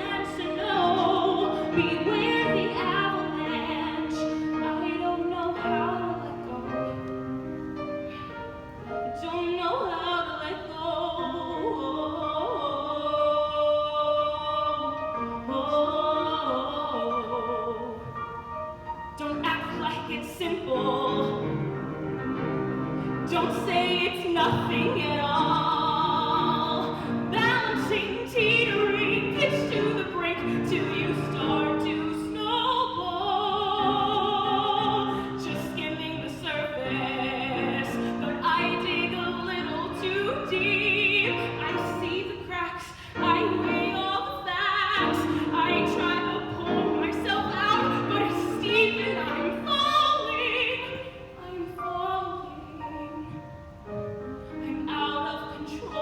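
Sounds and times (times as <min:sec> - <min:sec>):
woman singing with vibrato: 0:00.0 - 0:07.6, 0:08.6 - 0:56.0
musical accompaniment: 0:00.0 - 0:56.0.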